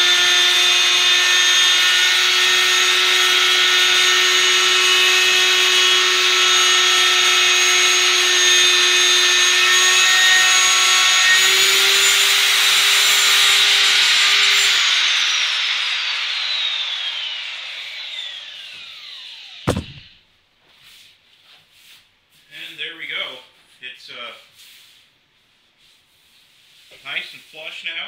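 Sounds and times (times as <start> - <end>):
router high whine: 14.8 - 20.1.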